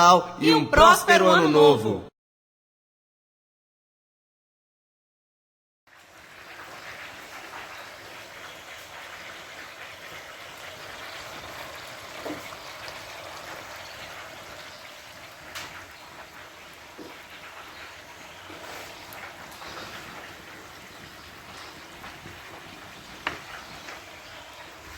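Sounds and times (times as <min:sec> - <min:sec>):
running water rushing: 0:06.0 - 0:24.9.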